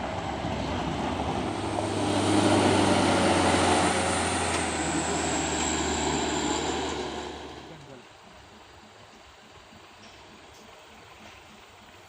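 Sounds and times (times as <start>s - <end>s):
truck diesel engine under load: 0.0s - 8.0s.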